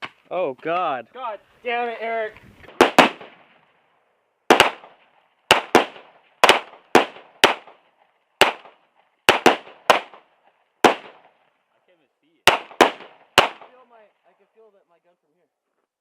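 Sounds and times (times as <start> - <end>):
gunshots with echo: 2.7 - 3.5, 4.5 - 7.8, 8.4 - 10.2, 10.8 - 11.3, 12.4 - 13.8.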